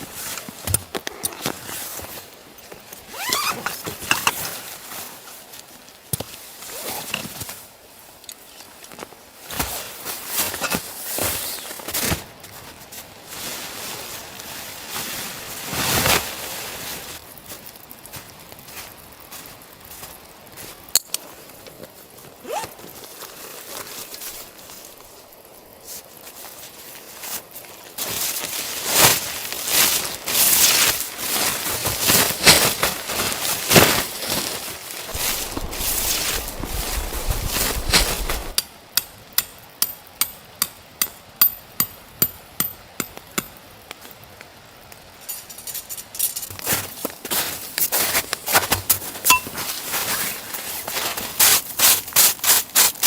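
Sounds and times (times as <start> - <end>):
crunching and rustling handling: 25.9 - 38.6.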